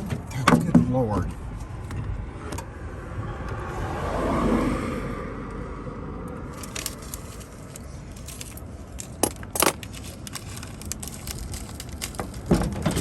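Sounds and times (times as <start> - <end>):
car passing: 1.4 - 8.9
small metal parts rattling: 6.5 - 13.0.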